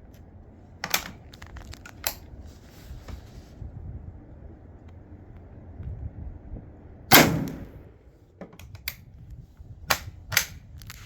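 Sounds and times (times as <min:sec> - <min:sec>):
gunshot: 0:07.1 - 0:07.8.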